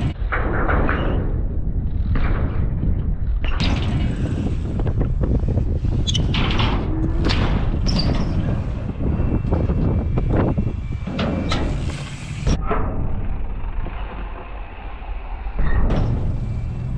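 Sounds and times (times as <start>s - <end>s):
wind buffeting microphone: 0.0s - 16.9s.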